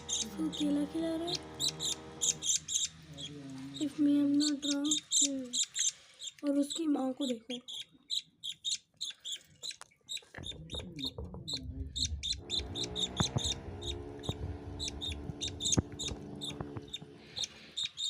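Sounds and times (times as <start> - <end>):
steady low hum: 0.0 - 5.6, 10.8 - 17.9
budgerigars chirping rapidly: 0.0 - 18.0.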